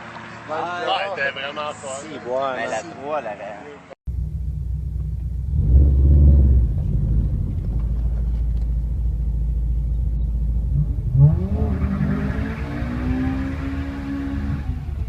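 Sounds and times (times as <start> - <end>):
car engine rumbling: 4.1 - 15.0
engine revving: 4.1 - 15.0.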